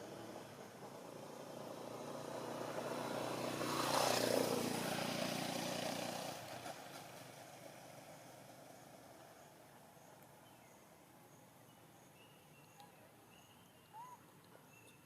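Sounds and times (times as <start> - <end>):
motor vehicle passing by: 0.0 - 10.0.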